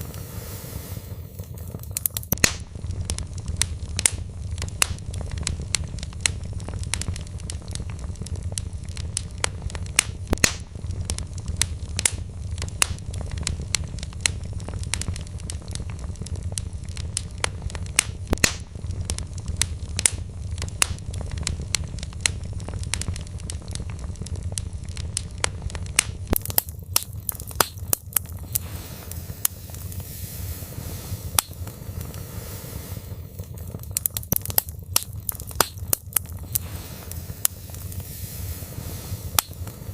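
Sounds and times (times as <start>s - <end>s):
high hiss: 0.0s - 2.4s, 26.4s - 39.9s
wood fire crackling: 0.0s - 39.9s
low rumble: 26.8s - 39.9s.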